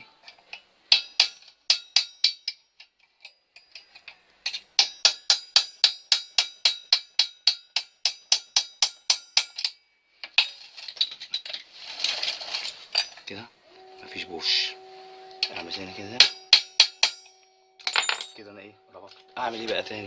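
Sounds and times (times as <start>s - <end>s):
ringing metal taps: 16.2s - 19.8s.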